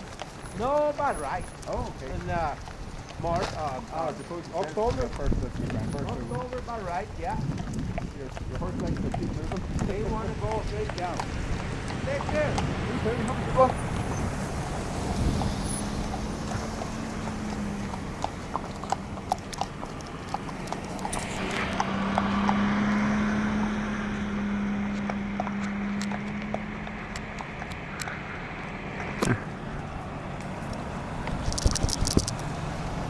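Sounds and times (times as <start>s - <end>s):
horse hooves clip-clopping on road: 0.0s - 33.0s.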